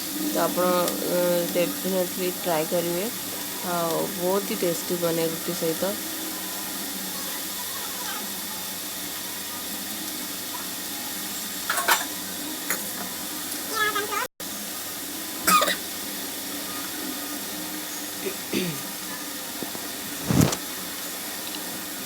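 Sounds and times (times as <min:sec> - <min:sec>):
vegetables sizzling in a pan: 0:00.0 - 0:22.0.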